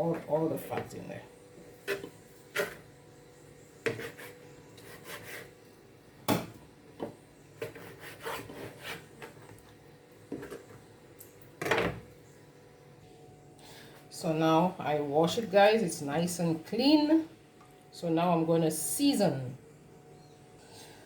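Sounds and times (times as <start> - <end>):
knife scraping on cutting board: 3.8 - 5.6, 7.6 - 9.2.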